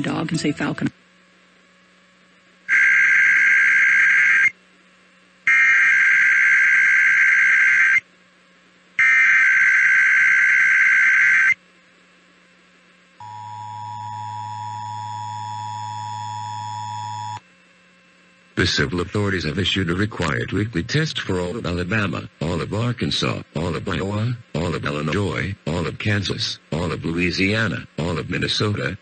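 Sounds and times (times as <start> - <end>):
warbling data tone bursts: 2.7 - 4.6, 5.5 - 8.0, 9.0 - 11.6, 13.2 - 17.4
two-tone attention signal: 13.2 - 17.4.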